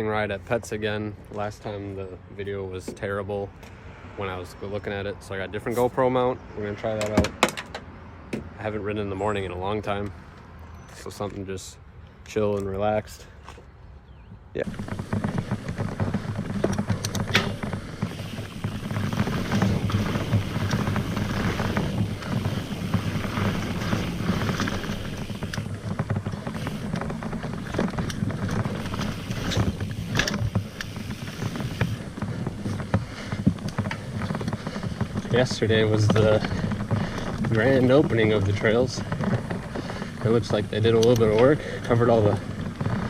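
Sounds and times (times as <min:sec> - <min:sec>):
bike rattling clicks and knocks: 0:05.6 - 0:13.6, 0:14.6 - 0:43.0
bike tyres rumbling on dirt: 0:14.2 - 0:43.0.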